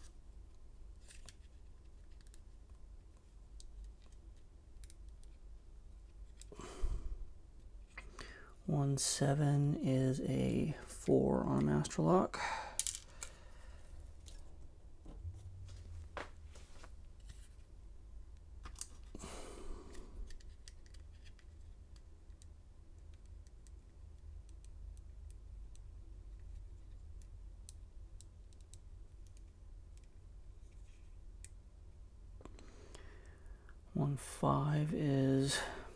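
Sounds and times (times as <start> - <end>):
steady low hum: 0.0 - 20.5
small clicks and light scraping: 1.0 - 5.4, 6.0 - 6.5, 20.2 - 31.6.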